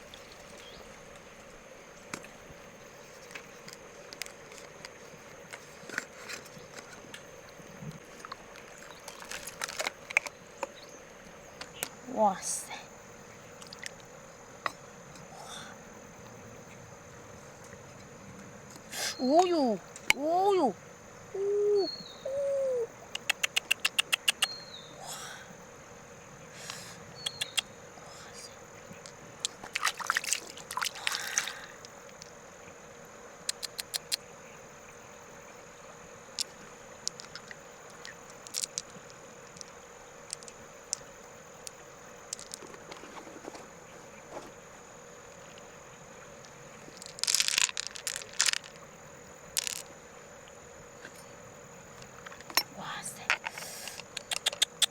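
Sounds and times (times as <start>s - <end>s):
sharp clicks: 23.2s - 24.6s.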